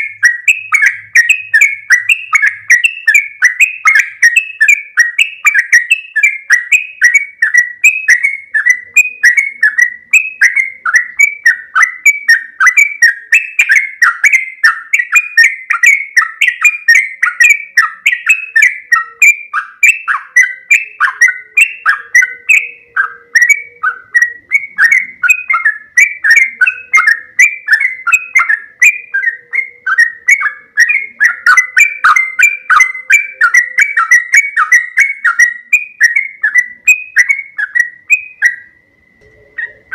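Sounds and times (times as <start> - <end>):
bird singing whistled notes: 0.0 - 39.9.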